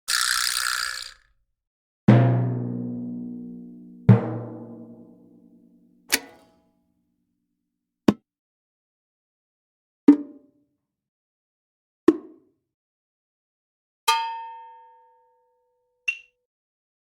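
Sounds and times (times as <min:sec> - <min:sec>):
deep pitched drum strikes: 0:02.1 - 0:05.6
sharp knock: 0:02.2 - 0:05.2.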